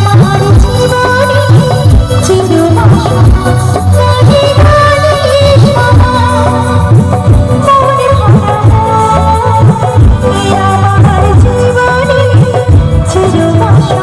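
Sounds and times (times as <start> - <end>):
loud song with heavy bass beat: 0.0 - 7.7.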